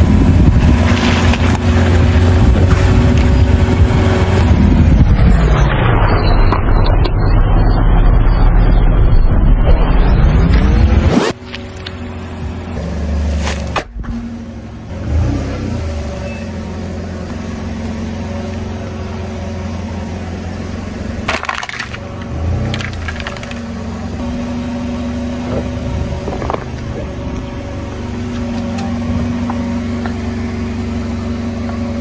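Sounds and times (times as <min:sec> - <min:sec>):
car engine idling: 0:11.4 - 0:32.0
objects cracking under car: 0:21.3 - 0:23.6.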